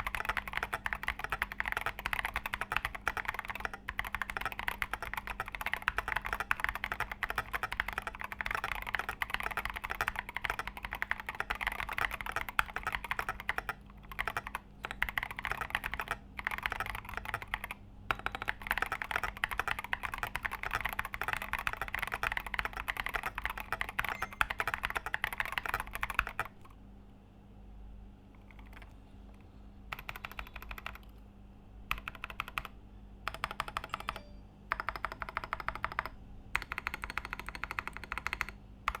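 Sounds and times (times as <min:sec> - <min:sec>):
mechanical keyboard typing: 0:00.0 - 0:26.7, 0:28.4 - 0:31.2, 0:31.9 - 0:39.0.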